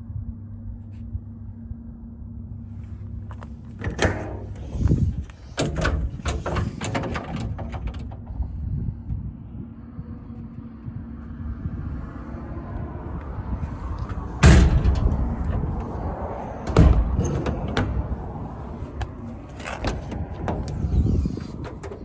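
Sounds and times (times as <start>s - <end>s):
steady low hum: 0.0s - 22.0s
truck door latch clicks: 3.4s - 8.3s, 14.0s - 22.0s
metal clunks: 3.4s - 8.4s, 13.9s - 22.0s.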